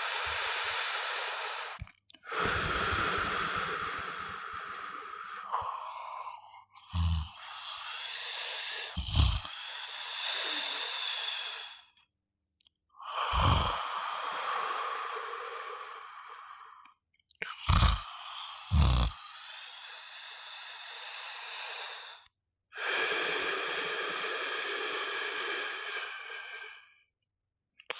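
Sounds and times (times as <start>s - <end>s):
person snoring: 0.0s - 11.8s, 13.0s - 16.7s, 17.5s - 22.2s.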